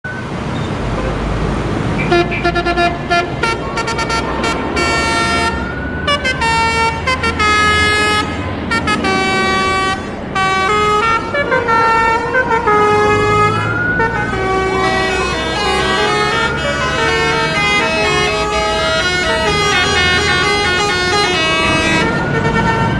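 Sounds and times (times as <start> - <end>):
road traffic rumble: 0.0 - 22.9
musical bus horn playing tune: 2.0 - 22.9.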